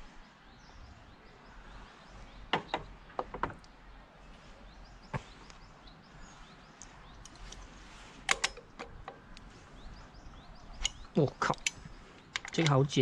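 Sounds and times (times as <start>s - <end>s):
hand tools clicking: 8.3s - 8.9s, 10.8s - 12.9s.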